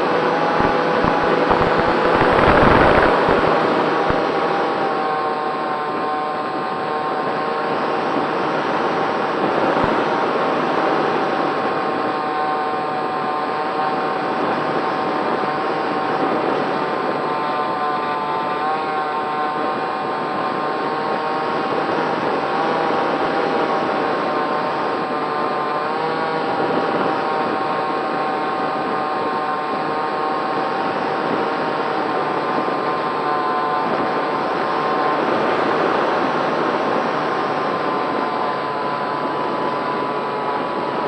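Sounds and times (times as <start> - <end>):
rush of air: 0.0 - 5.0
electric motor and propeller whining: 0.0 - 41.0.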